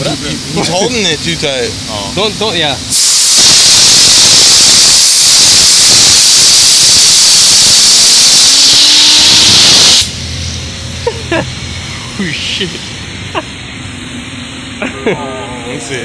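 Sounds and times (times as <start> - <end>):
compressed air hissing: 2.9 - 10.7.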